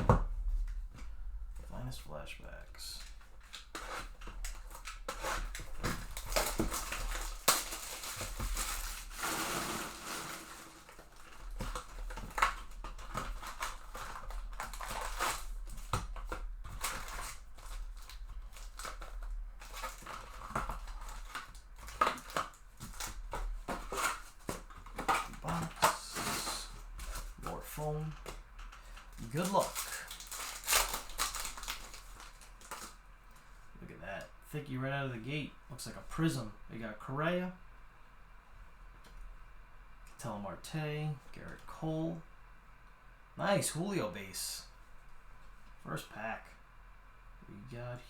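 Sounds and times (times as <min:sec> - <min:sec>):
cardboard and foam rustling: 0:02.8 - 0:33.6
plastic wrap crinkling and tearing: 0:02.9 - 0:33.0.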